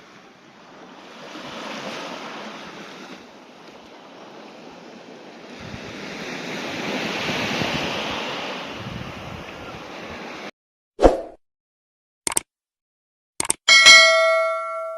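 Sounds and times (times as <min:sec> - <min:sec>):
sea waves washing on shore: 0:00.0 - 0:10.5.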